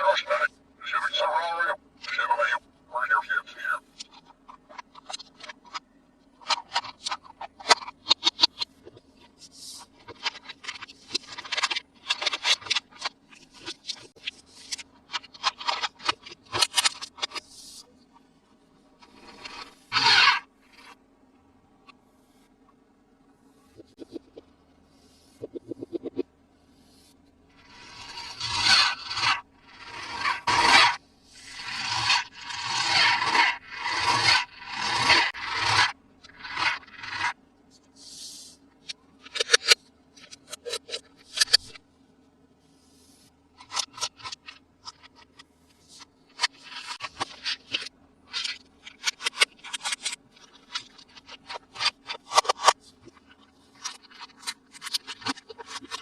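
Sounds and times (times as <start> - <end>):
packaging rubbed and scraped: 6.4 - 17.9, 19.0 - 21.0, 26.8 - 37.4, 42.8 - 56.0.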